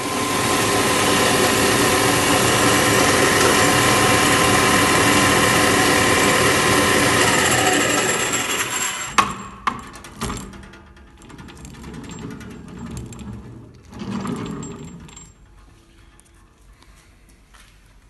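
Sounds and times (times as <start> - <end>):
machine mechanism clunking and rattling: 9.0 - 16.8.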